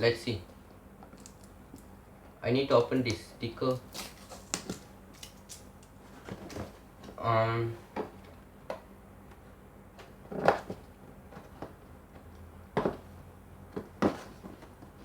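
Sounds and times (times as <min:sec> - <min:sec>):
cardboard knocks and scrapes: 0:13.8 - 0:15.0.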